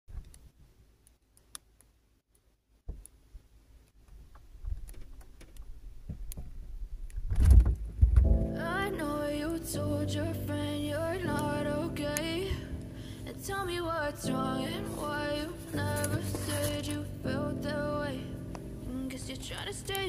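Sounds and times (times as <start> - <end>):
faint low rumble: 5.7 - 19.8
heavy low thumps: 7.8 - 8.6
music: 8.2 - 20.0.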